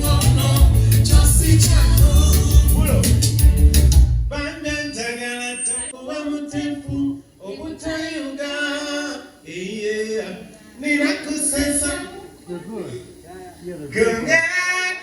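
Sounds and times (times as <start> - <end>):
person singing unaccompanied: 0.0 - 3.4
band music with heavy bass: 0.0 - 4.8.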